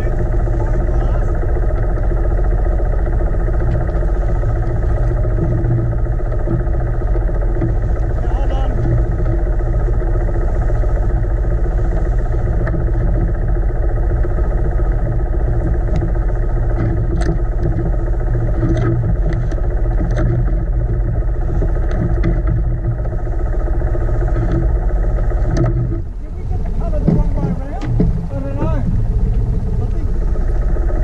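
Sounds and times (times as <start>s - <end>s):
boat engine droning: 0.0s - 31.0s.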